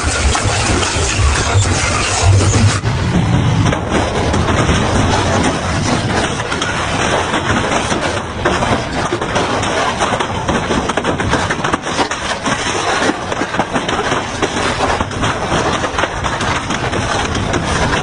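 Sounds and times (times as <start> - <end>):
sharp cracks and knocks: 0.0 - 18.0.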